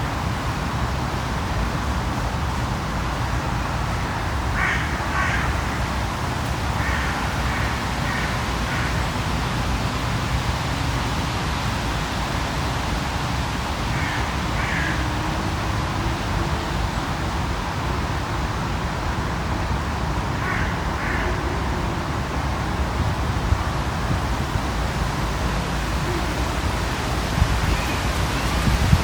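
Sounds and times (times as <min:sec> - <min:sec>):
low rumble of city traffic: 0:00.0 - 0:29.0.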